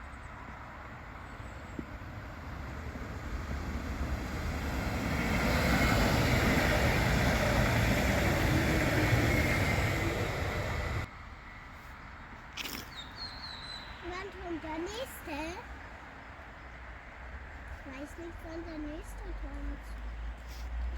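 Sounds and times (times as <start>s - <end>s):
train passing at speed: 0.0s - 11.6s, 14.0s - 20.9s.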